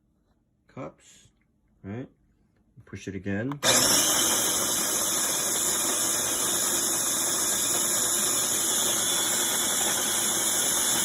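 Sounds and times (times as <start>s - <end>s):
electric coffee grinder grinding beans: 3.6s - 11.0s.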